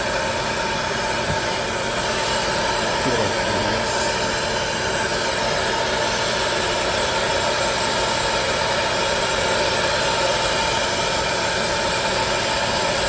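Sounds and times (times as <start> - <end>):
fan motor blowing hot air: 0.0 - 13.0.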